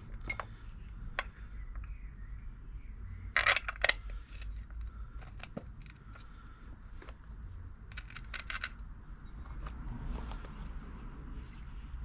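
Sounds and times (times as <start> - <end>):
metal tools clinking: 0.0 - 0.6, 3.4 - 4.6.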